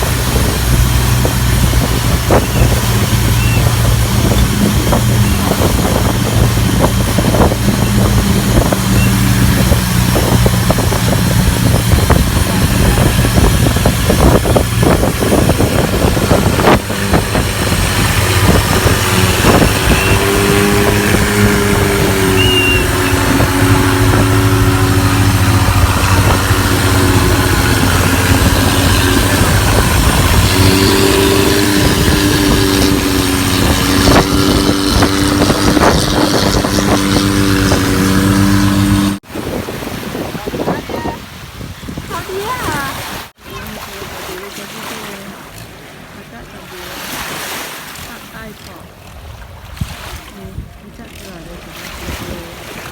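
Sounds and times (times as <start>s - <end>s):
vehicle engine running: 0.0s - 39.2s
loud rushing noise: 0.0s - 39.9s.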